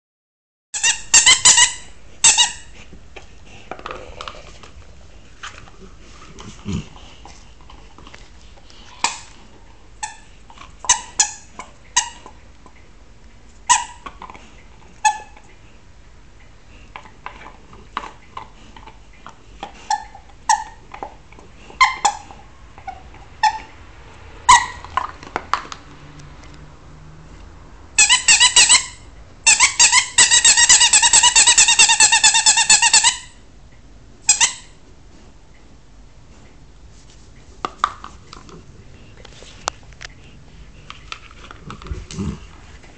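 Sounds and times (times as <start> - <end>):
squeaky toy squeaking: 0.8 - 2.8, 10.0 - 12.3, 13.7 - 14.0, 15.0 - 15.4, 19.9 - 20.8, 21.8 - 23.7, 24.5 - 24.8, 28.0 - 33.4, 34.3 - 34.8.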